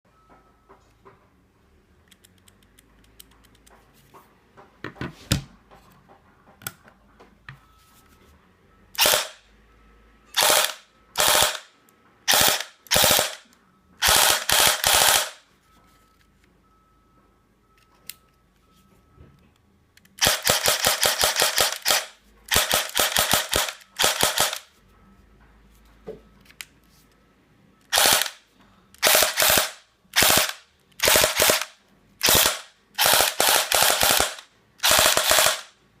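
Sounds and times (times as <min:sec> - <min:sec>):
airsoft pistol firing full auto: 0:09.0 - 0:09.4, 0:10.4 - 0:11.7, 0:12.3 - 0:13.4, 0:14.0 - 0:15.4, 0:20.2 - 0:24.7, 0:27.9 - 0:28.4, 0:29.0 - 0:35.8.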